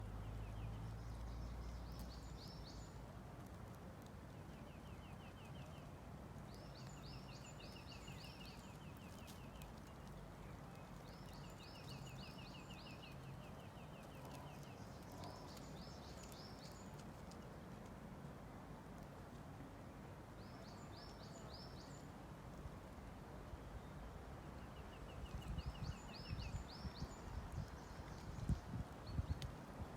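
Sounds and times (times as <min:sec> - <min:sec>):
songbird singing trills: 0:06.5 - 0:17.0, 0:20.4 - 0:22.1, 0:24.6 - 0:29.6.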